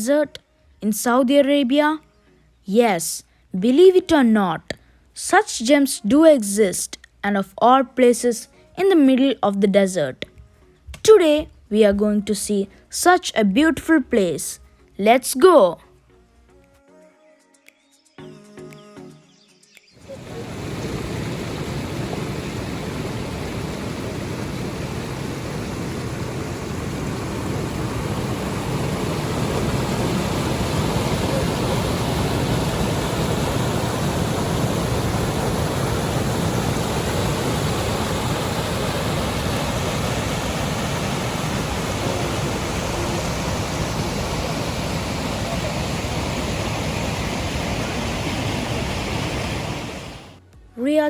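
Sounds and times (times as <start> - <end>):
water rushing over cascades: 20.0 - 50.4.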